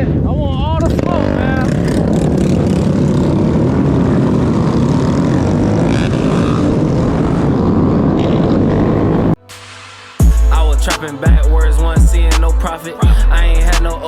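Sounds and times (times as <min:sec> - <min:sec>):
motorcycle rumble: 0:00.0 - 0:09.4.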